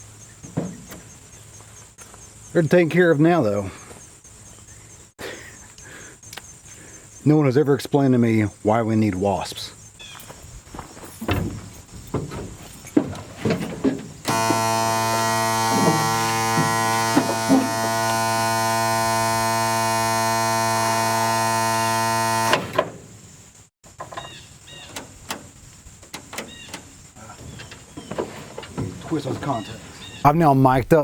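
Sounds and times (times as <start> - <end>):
dashboard buzzer: 14.3 - 22.9.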